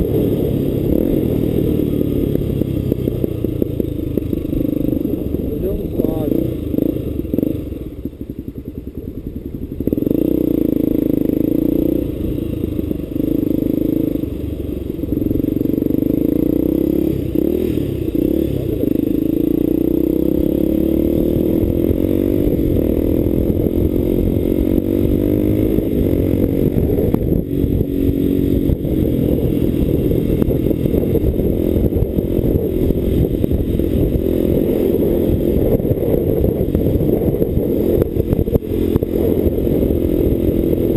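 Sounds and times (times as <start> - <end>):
motorcycle engine: 0.0 - 40.9.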